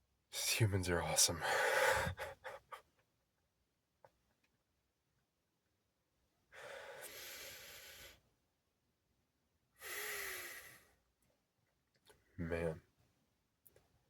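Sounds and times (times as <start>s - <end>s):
man breathing close to microphone: 1.4s - 2.7s, 6.5s - 8.2s, 9.8s - 11.0s.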